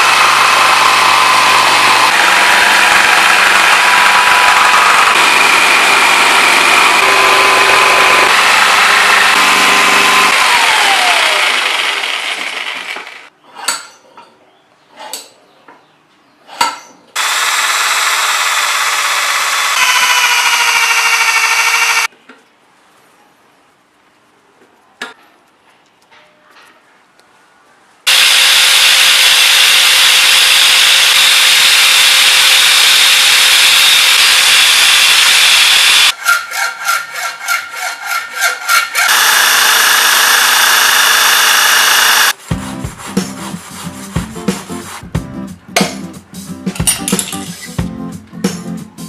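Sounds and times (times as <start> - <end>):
machine motor grinding rattle: 0.0 - 13.3, 28.1 - 36.2.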